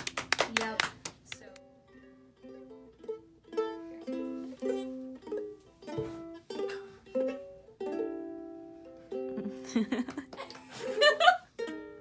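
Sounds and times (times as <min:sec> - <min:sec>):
plucked string background music: 0:01.5 - 0:10.3, 0:11.5 - 0:12.0.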